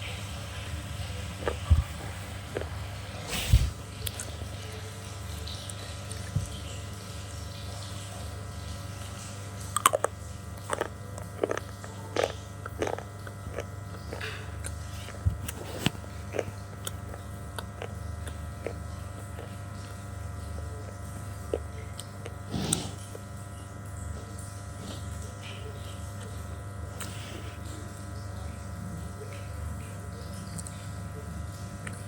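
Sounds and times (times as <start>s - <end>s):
crunchy chewing: 0.5s - 4.6s, 9.1s - 27.8s.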